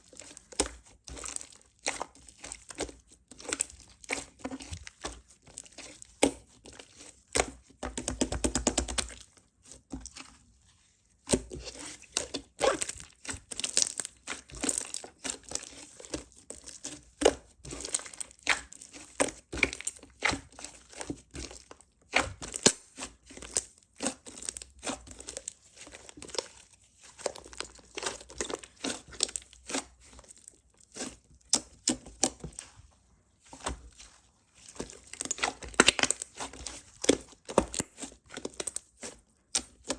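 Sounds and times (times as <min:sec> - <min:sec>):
slime crackling and popping: 0:35.0 - 0:36.4.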